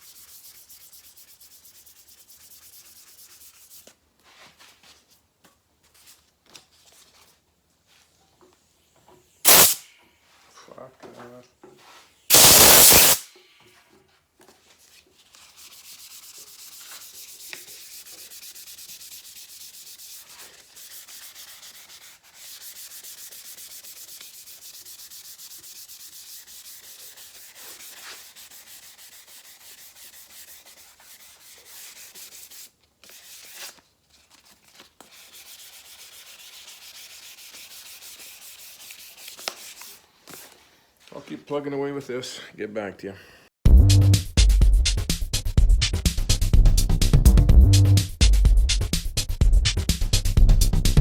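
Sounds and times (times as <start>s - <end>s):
sandpaper rasping strokes: 0.0s - 4.0s, 9.5s - 9.8s, 12.3s - 13.2s, 15.2s - 33.8s, 34.4s - 40.6s
loud burst of noise: 9.5s - 9.8s, 12.3s - 13.2s.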